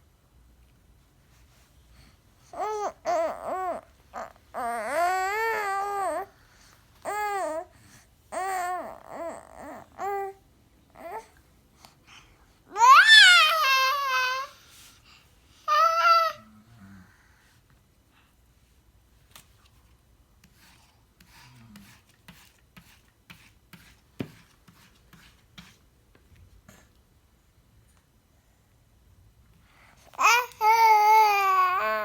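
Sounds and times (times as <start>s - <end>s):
baby babbling and squealing: 12.7s - 14.5s, 15.7s - 16.4s.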